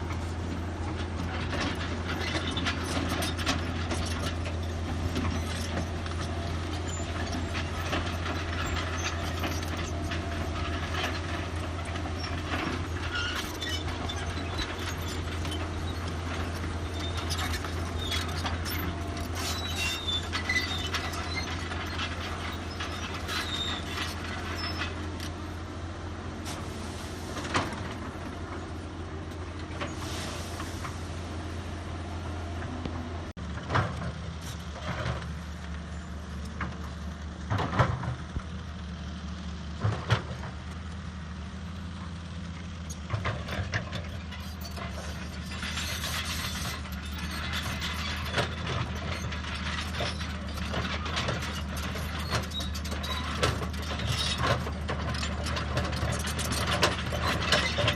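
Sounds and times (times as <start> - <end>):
diesel engine running: 0.0 - 57.9
metallic clanks and knocks: 0.9 - 25.6, 43.0 - 57.9.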